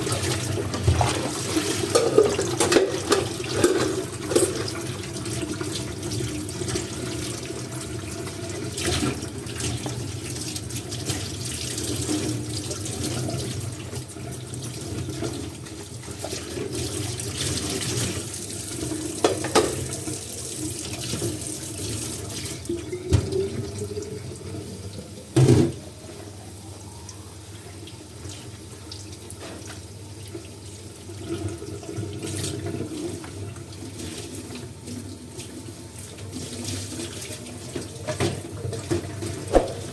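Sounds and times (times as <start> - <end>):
tap water running into sink: 0.0 - 25.8.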